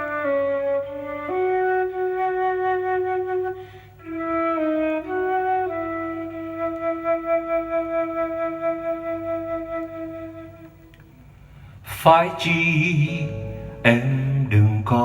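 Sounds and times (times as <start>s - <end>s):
flute playing slow melody: 0.0s - 11.1s.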